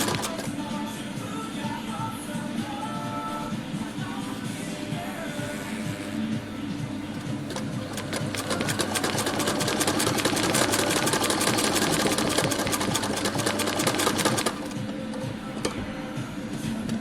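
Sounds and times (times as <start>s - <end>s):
sewing machine clattering: 0.0s - 0.5s, 7.2s - 14.8s.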